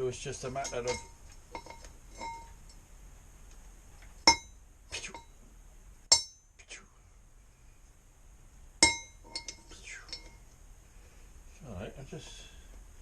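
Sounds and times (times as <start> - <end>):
metal parts clinking: 0.5 - 2.5, 8.8 - 10.4.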